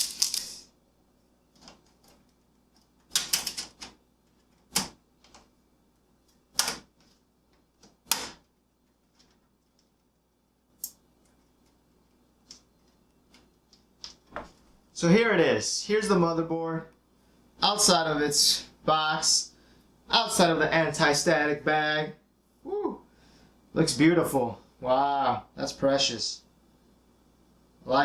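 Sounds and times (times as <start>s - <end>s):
packaging crackly rustles: 0.0s - 0.7s.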